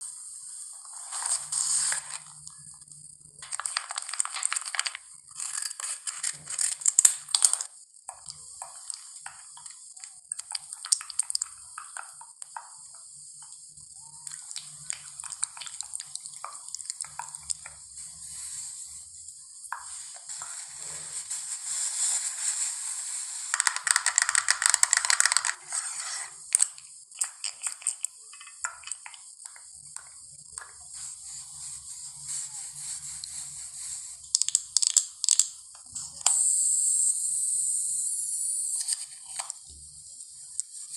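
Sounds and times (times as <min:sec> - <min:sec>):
steady hiss: 0:00.0 - 0:40.9
packaging crackling and tapping: 0:03.4 - 0:13.6, 0:14.2 - 0:17.8, 0:23.5 - 0:25.7, 0:26.6 - 0:30.8, 0:34.3 - 0:35.9.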